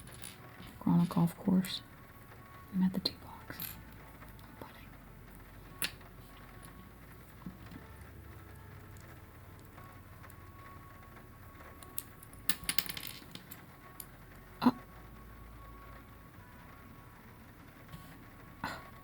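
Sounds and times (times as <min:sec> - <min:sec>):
plastic toy bricks clicking and rattling: 0:00.0 - 0:01.8, 0:11.7 - 0:14.2.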